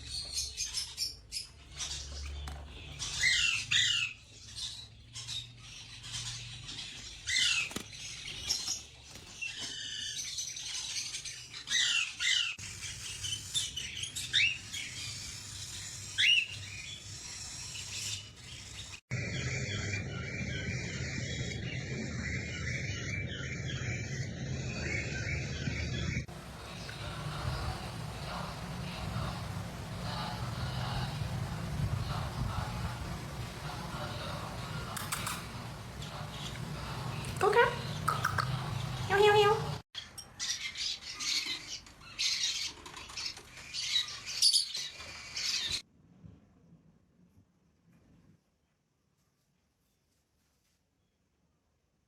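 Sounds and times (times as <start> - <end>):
dense chatter: 26.3 - 39.8
parrot calling: 26.3 - 39.8.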